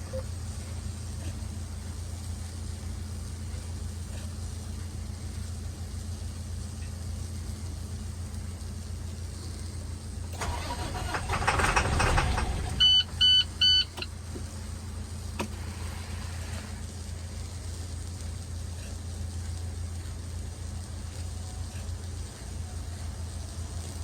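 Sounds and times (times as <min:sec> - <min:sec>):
truck engine droning: 0:10.4 - 0:17.6
short loud beeps: 0:12.8 - 0:14.1.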